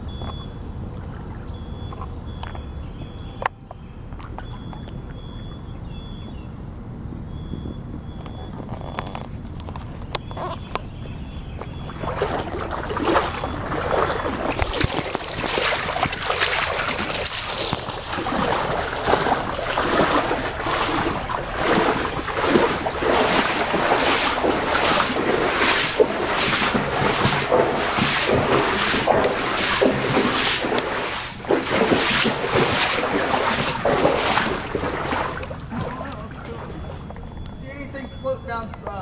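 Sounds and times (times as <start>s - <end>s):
floodwater splashing and rushing: 11.8s - 37.2s.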